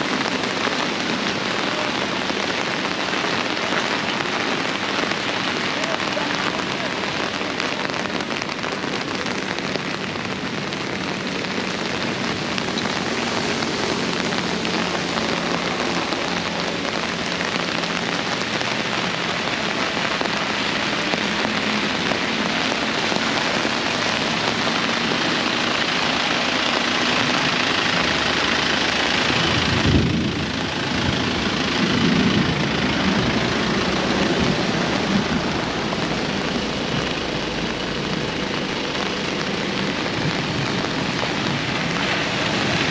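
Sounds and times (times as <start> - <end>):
heavy rain pouring: 0.0 - 42.9
low rumble: 28.1 - 42.9.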